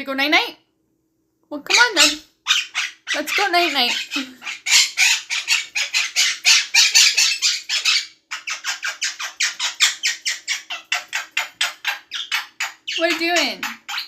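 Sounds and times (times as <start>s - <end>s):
parrot squawking: 1.7s - 14.0s.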